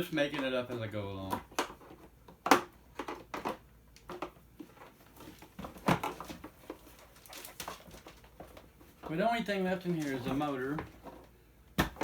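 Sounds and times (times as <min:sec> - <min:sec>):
plastic toy parts knocking and clicking: 0:00.3 - 0:04.9.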